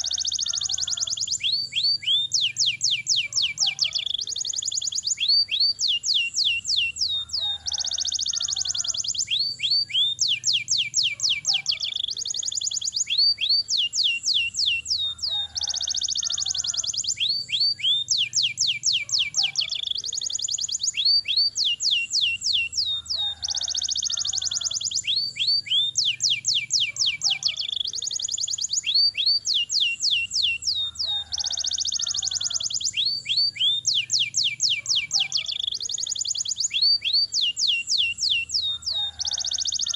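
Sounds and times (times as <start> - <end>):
canary singing: 0.0 - 39.9.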